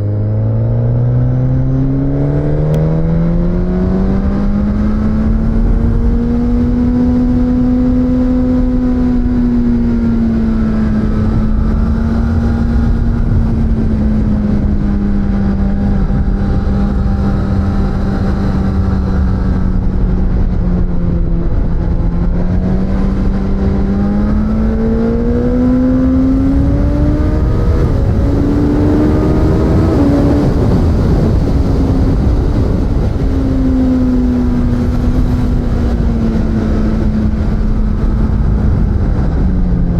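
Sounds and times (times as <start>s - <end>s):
motorcycle engine running: 0.0s - 39.9s
rush of riding wind: 0.0s - 39.9s.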